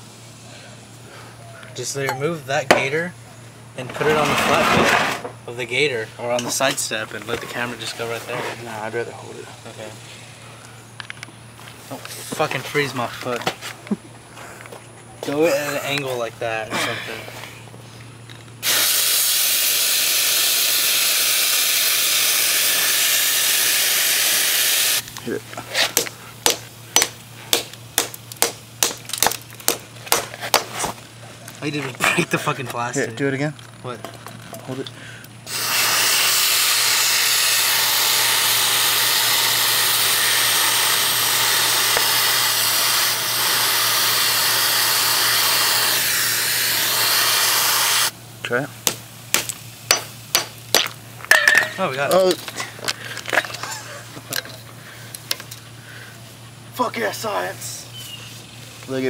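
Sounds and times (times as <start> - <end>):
compressed air can spraying: 18.6 - 25.1, 35.4 - 48.2.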